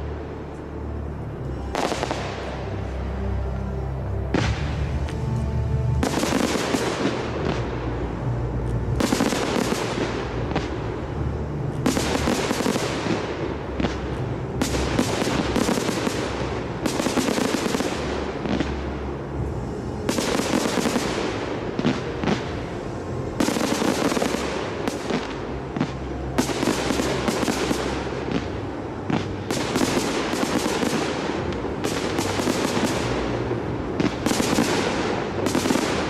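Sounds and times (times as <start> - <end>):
fireworks bursting and crackling: 0.0 - 36.0
music: 0.0 - 36.0.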